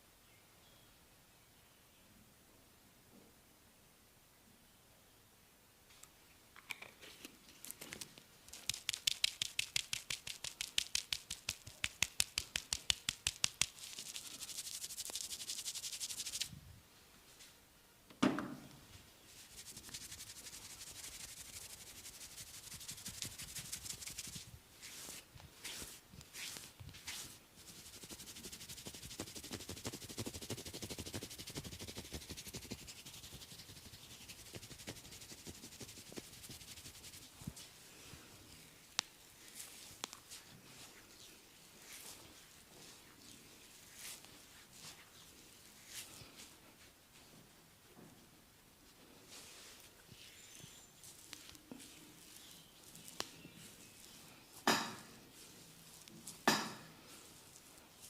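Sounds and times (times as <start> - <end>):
hand smacking skin: 8.5 - 15.2
hands tapping on skin: 8.5 - 16.2
hands rubbing oiled skin: 8.5 - 16.5, 19.2 - 38.1, 38.9 - 46.8, 49.1 - 50.4, 51.0 - 54.4, 55.3 - 56.4, 57.0 - 58.0.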